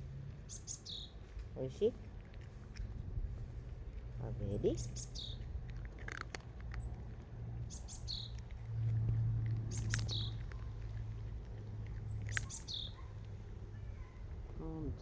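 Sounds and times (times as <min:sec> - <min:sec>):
small bird chirping: 0:00.5 - 0:01.2, 0:04.5 - 0:05.5, 0:07.6 - 0:09.0, 0:09.6 - 0:14.8.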